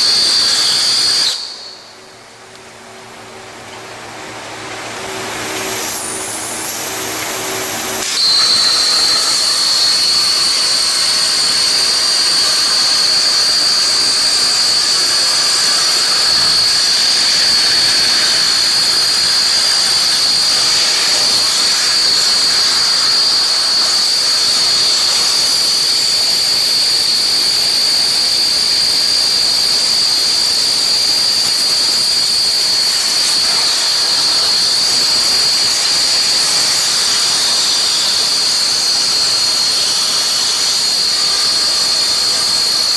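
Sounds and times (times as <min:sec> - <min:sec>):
cutting torch hissing: 0:00.0 - 0:02.0, 0:05.3 - 0:42.9
high steady whine: 0:00.0 - 0:42.9.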